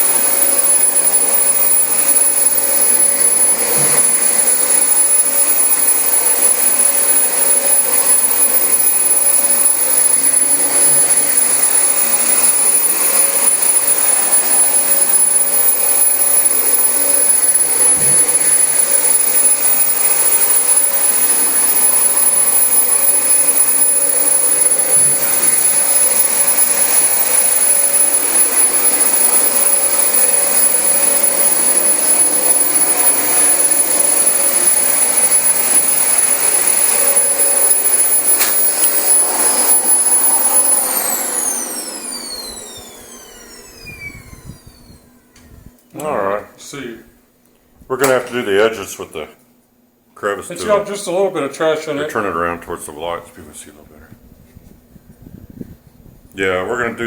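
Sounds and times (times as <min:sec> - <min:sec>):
vacuum cleaner running over carpet: 0:00.0 - 0:44.7.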